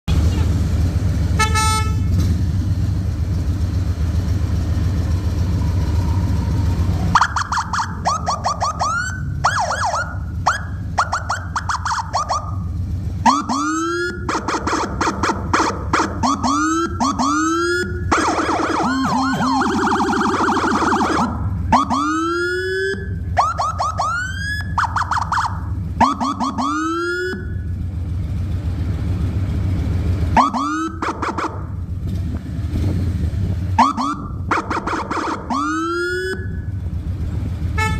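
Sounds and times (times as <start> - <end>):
motorcycle engine idling: 0.1 - 22.2, 27.4 - 34.6, 36.4 - 37.9
electronic siren whoops and warble: 4.8 - 27.7, 30.4 - 31.8, 33.8 - 36.8.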